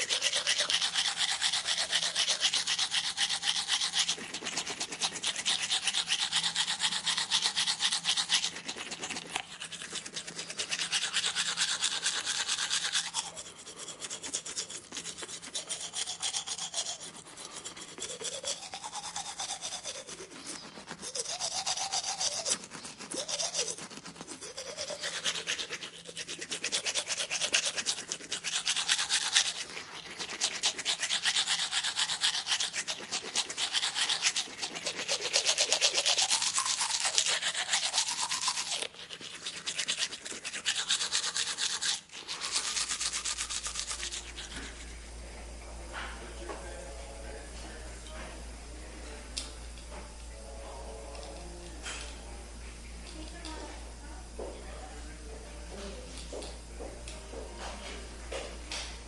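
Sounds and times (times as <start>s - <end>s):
scratchy scrubbing: 0.0s - 45.1s.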